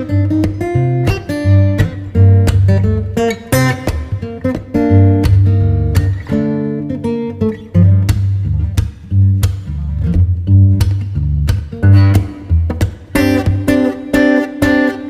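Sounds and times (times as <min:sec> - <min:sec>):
plucked guitar over bass line: 0:00.0 - 0:15.0.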